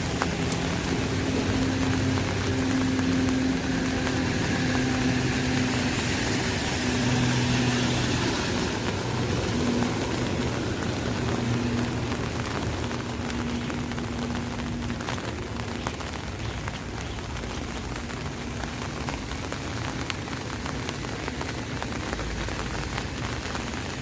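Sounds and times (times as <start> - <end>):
low engine hum: 0.0 - 24.0
rain falling on an umbrella: 0.0 - 24.0.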